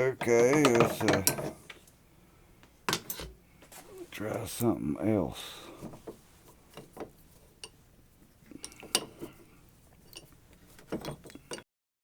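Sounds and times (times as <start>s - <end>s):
metal tools clinking: 0.2s - 1.7s, 8.6s - 9.4s, 10.0s - 11.6s.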